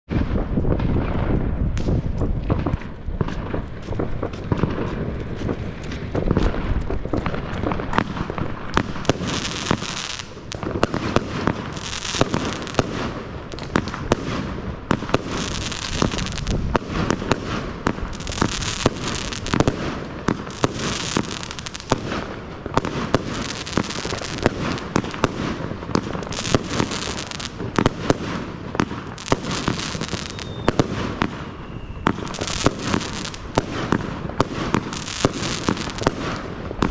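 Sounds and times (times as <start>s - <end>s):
firework bangs: 0.1s - 36.9s
firework hissing crackle: 1.3s - 36.9s.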